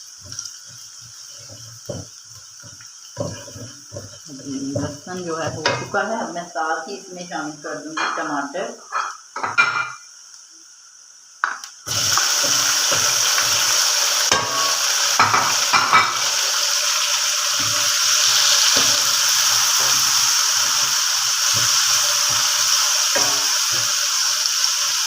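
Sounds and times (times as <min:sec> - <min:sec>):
tomatoes sizzling in hot oil: 0:00.0 - 0:25.0
spoon knocking and scraping pan: 0:00.1 - 0:06.0, 0:08.9 - 0:10.0, 0:11.4 - 0:16.3, 0:17.5 - 0:25.0.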